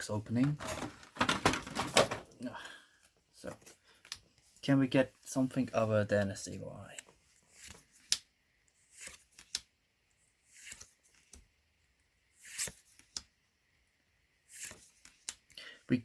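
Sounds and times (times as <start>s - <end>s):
cards sliding papery swishes: 7.5s - 8.2s, 8.8s - 9.6s, 10.4s - 11.4s, 12.4s - 13.2s, 14.5s - 15.4s.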